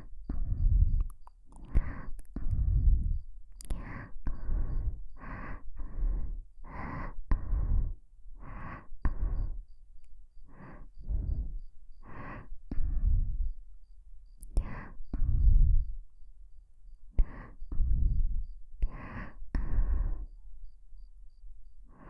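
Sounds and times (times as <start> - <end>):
slow breathing into microphone: 0.3 - 9.6, 10.4 - 13.4, 17.2 - 20.4.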